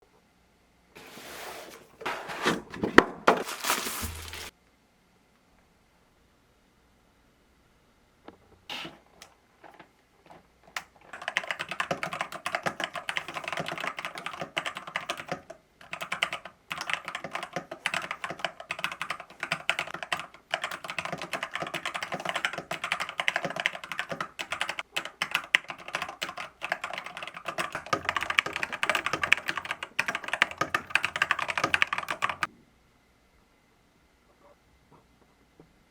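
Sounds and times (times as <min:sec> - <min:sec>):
mechanical keyboard typing: 0:10.8 - 0:32.5.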